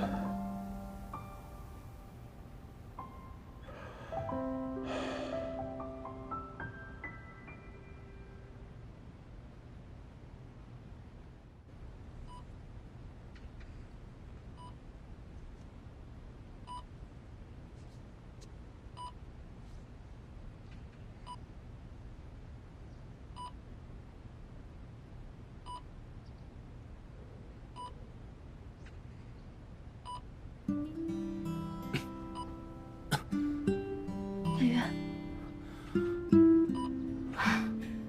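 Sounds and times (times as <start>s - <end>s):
patient monitor beeping: 0.0s - 3.7s, 30.1s - 38.0s
low steady hum: 0.0s - 38.0s.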